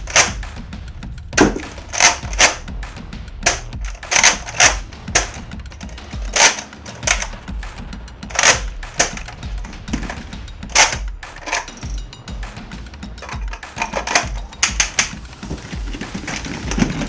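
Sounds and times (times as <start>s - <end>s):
toy guns clicking: 0.0s - 0.4s, 1.4s - 2.7s, 3.4s - 7.4s, 8.3s - 12.0s, 13.2s - 15.3s.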